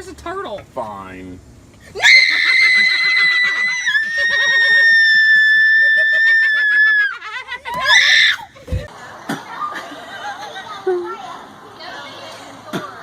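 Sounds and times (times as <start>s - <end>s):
laughter: 2.2s - 7.8s, 8.5s - 11.2s.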